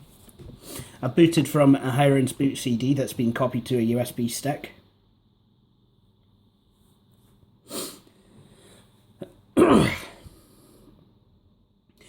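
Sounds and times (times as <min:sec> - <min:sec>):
sharp intake of breath: 0:07.6 - 0:08.9
man sneezing: 0:09.6 - 0:10.3.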